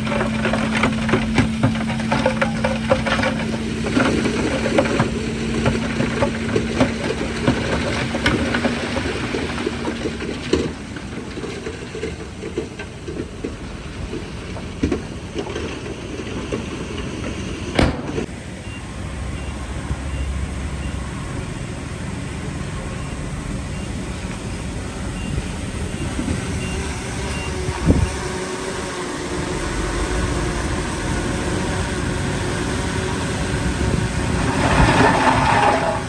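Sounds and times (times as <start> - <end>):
stone and dirt clattering: 0.0 - 18.3, 33.9 - 36.0
diesel earthmoving machinery: 0.0 - 36.0.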